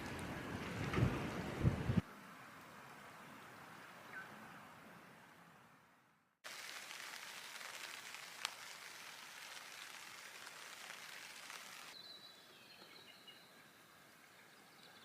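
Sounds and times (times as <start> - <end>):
light rain pattering: 0.0 - 4.8, 6.4 - 12.0
bird chirping: 11.5 - 15.0.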